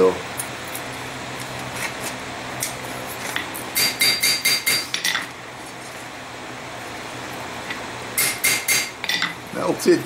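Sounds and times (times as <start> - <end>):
hammer ringing on anvil: 3.8 - 4.9, 8.2 - 9.3.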